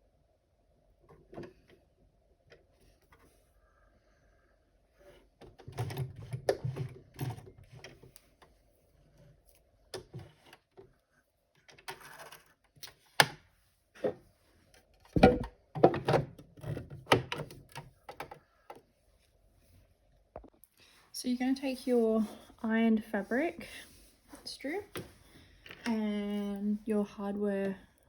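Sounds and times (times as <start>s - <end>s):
objects clattering: 15.1s - 16.8s.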